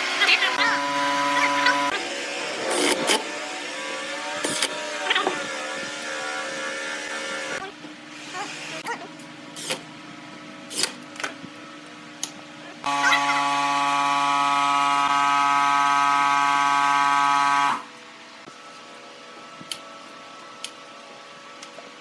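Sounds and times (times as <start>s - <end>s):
power tool motor running: 0.0s - 8.8s, 12.9s - 17.9s.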